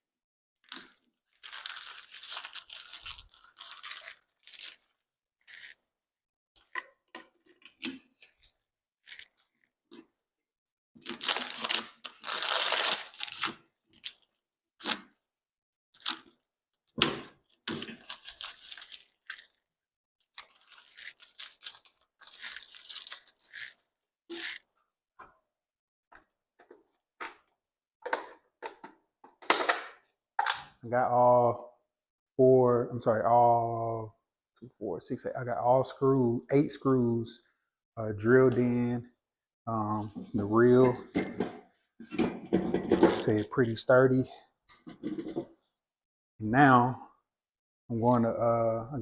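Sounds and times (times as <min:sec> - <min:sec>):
scraping and crunching of handled objects: 0:17.5 - 0:19.6, 0:20.2 - 0:24.7.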